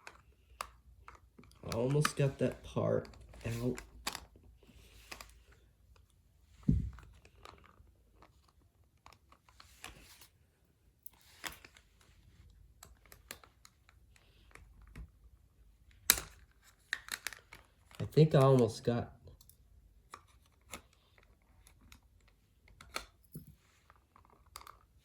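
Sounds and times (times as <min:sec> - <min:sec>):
plastic toy parts clicking and scraping: 0:00.0 - 0:06.2, 0:07.0 - 0:10.4, 0:11.1 - 0:15.1, 0:15.9 - 0:18.8, 0:19.4 - 0:25.0
plastic thud: 0:06.6 - 0:07.2.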